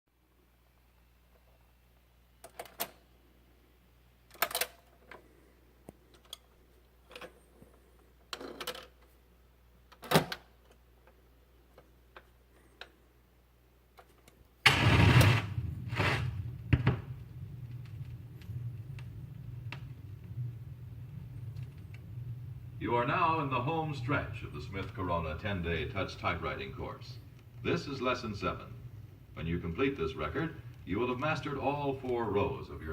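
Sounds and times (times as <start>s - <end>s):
faint low hum: 0.2s - 32.9s
record groove rumble: 14.7s - 32.9s.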